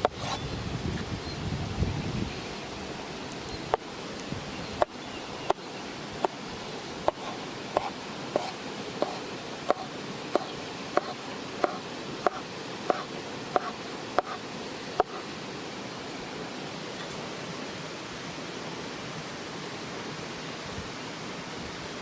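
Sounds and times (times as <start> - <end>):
running water: 0.0 - 22.0
knife chopping on wooden board: 7.1 - 14.4.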